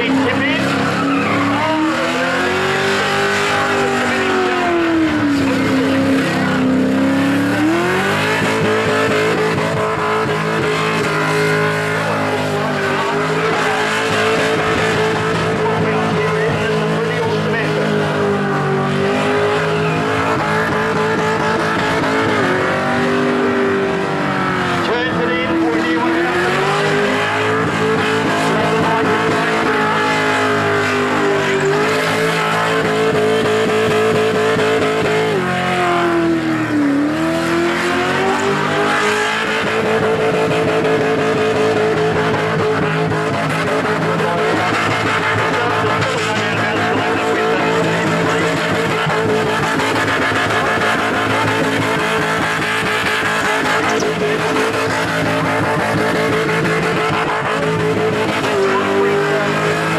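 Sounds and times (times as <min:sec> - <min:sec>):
tyres squealing: 0:00.0 - 0:23.6, 0:36.7 - 0:59.9
car engine at high revs: 0:00.0 - 0:59.9.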